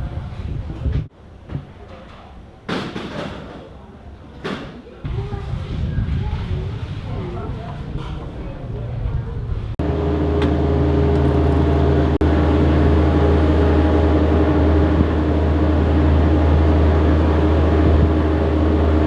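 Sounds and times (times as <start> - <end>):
low mechanical hum: 5.0 - 19.0.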